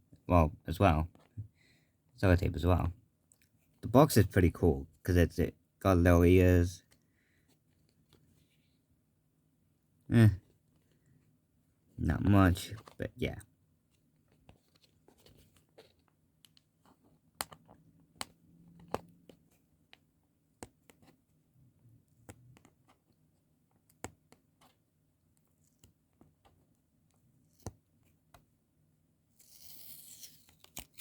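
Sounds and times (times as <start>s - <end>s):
hands handling cardboard box: 14.0s - 21.3s.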